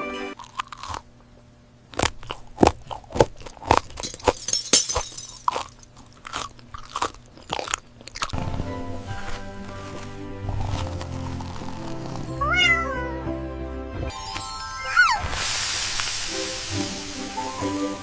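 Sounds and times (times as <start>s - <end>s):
background music: 0.0s - 0.4s, 8.4s - 18.0s
crunching and chewing crisp food: 0.4s - 12.5s.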